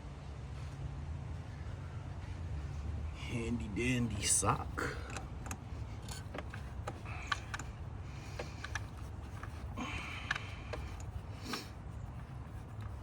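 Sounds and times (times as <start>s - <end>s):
steady low hum: 0.0s - 13.0s
tools clicking and knocking: 4.8s - 13.0s.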